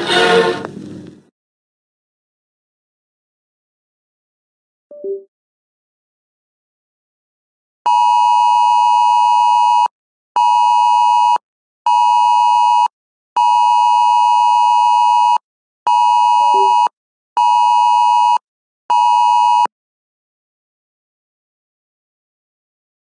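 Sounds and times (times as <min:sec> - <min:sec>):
electronic alert beeps: 0:16.5 - 0:16.9.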